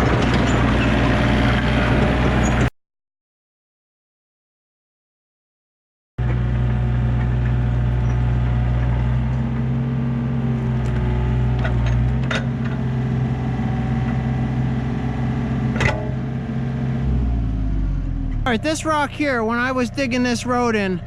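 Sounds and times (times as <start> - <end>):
diesel engine running: 0.0 - 2.7, 6.2 - 21.0.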